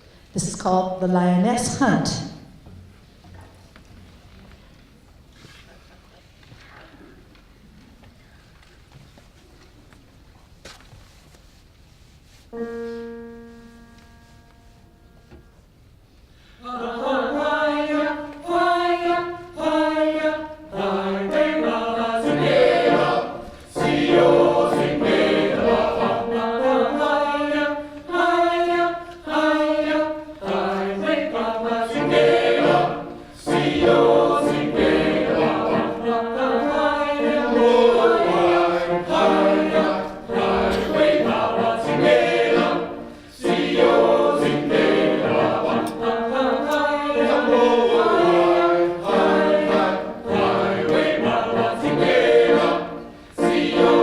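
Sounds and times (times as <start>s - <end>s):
choir singing a cappella: 16.5s - 54.0s.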